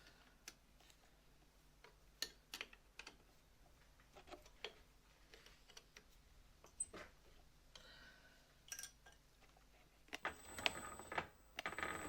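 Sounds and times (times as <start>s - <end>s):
light clicks of small items handled: 1.8s - 7.9s.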